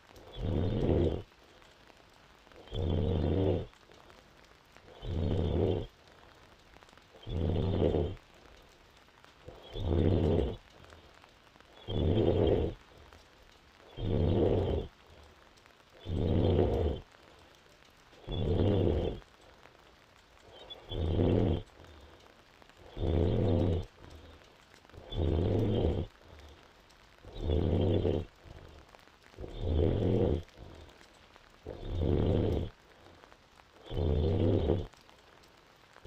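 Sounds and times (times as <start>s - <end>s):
woman snoring: 0.4s - 1.2s, 2.7s - 3.7s, 5.0s - 5.9s, 7.2s - 8.2s, 9.6s - 10.6s, 11.8s - 12.8s, 13.9s - 14.9s, 16.0s - 17.0s, 18.3s - 19.2s, 20.9s - 21.7s, 22.9s - 23.9s, 25.0s - 26.1s, 27.3s - 28.3s, 29.4s - 30.5s, 31.7s - 32.7s, 33.8s - 34.9s.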